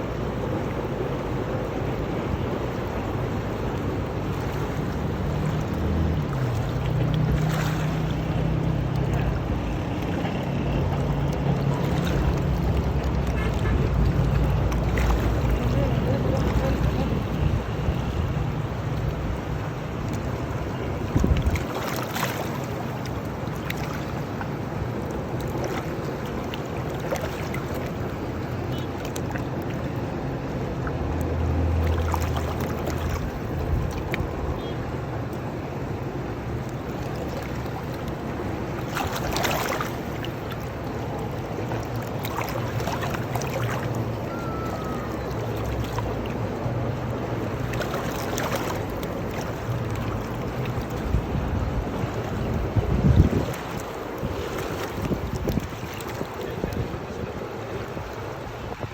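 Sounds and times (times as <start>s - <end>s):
wind rumbling on microphone: 0.0s - 21.8s, 29.9s - 37.0s, 48.7s - 58.9s
river water lapping: 0.0s - 58.9s.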